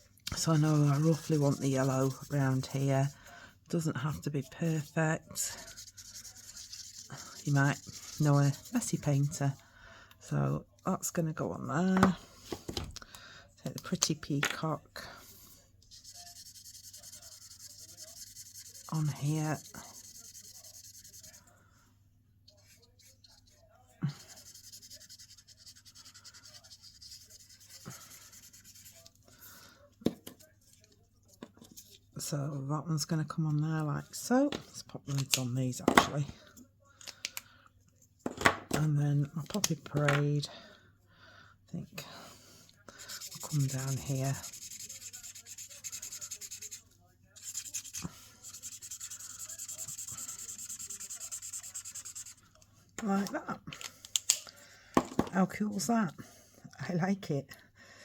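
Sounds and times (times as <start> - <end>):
marker scribbling on cardstock: 0.3 - 3.2, 4.4 - 9.4, 15.9 - 21.4, 22.6 - 29.2, 43.0 - 52.5.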